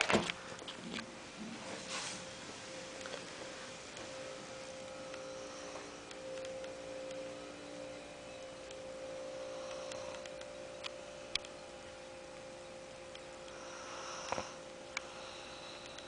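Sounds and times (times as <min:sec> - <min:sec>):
faint steady hum: 0:00.0 - 0:16.0
faint ticks: 0:15.7 - 0:16.0.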